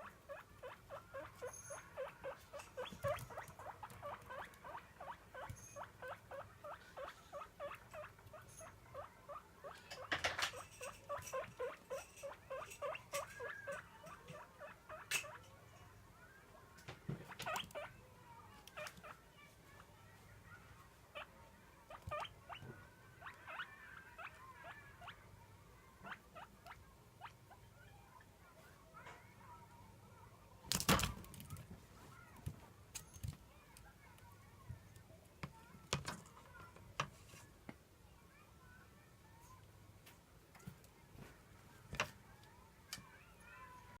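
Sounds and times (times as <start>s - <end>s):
guinea pig wheeking: 0.0s - 15.5s, 17.2s - 18.0s, 18.6s - 19.2s, 20.5s - 28.3s.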